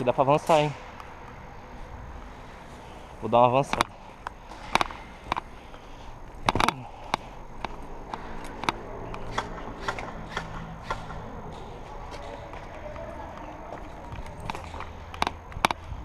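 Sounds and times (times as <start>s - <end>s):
crunching footsteps: 0.0s - 16.0s.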